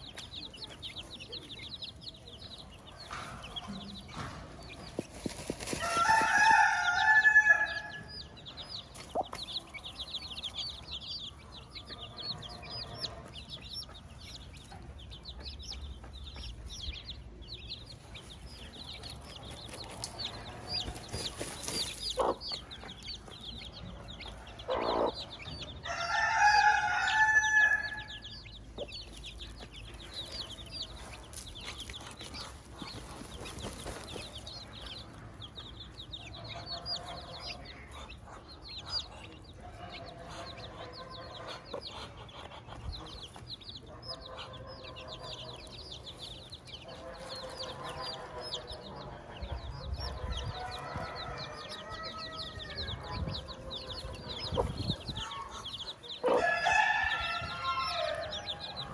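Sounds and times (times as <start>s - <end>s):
chicks peeping: 0.0s - 58.9s
rooster crowing: 5.8s - 8.0s, 25.8s - 28.2s, 50.6s - 53.4s, 56.3s - 58.9s
hen clucking: 18.9s - 34.4s, 36.4s - 58.9s.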